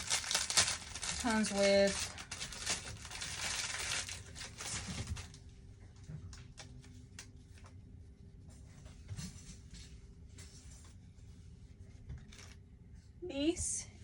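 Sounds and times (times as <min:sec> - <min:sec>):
packaging rustling and crackling: 0:00.0 - 0:05.4.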